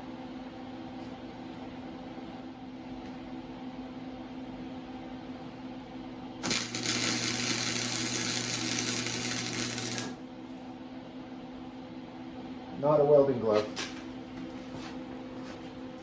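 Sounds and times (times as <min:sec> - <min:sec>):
steady hum: 0:00.0 - 0:10.8
welding arc crackling hiss: 0:06.4 - 0:10.2.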